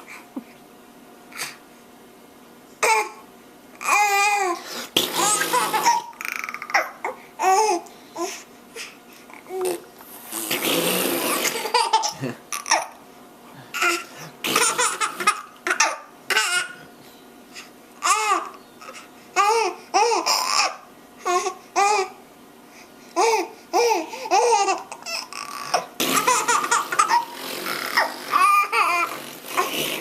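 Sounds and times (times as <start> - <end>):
fart sound: 5.0 - 6.0, 9.6 - 11.8, 14.4 - 15.0, 26.0 - 30.0
baby giggling: 5.0 - 7.8, 10.4 - 13.0, 13.8 - 16.8, 23.2 - 30.0.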